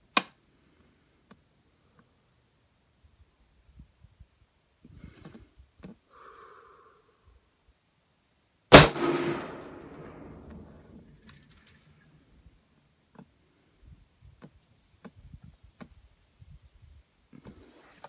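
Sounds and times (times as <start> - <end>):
rifle shot echoing: 8.7 - 10.7
faint metallic tinkling: 11.1 - 12.4.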